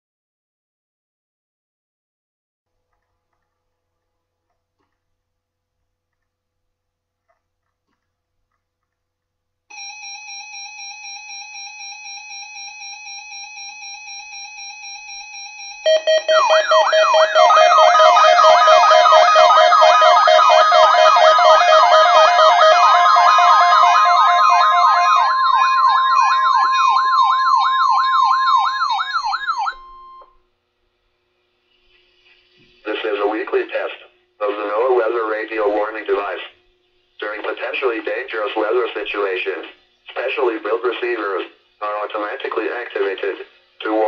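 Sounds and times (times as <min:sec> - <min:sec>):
warbling alarm tone: 0:09.7 - 0:30.4
siren sweeping up: 0:11.3 - 0:30.3
steady held tones: 0:15.6 - 0:44.0.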